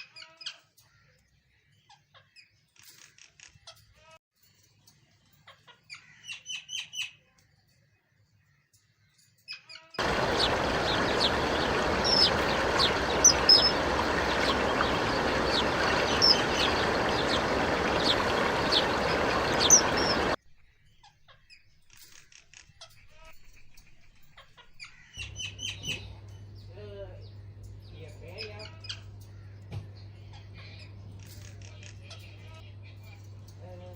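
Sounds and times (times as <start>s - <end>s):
small birds chirping: 4.6s - 33.9s
loud steady rushing noise: 10.0s - 20.4s.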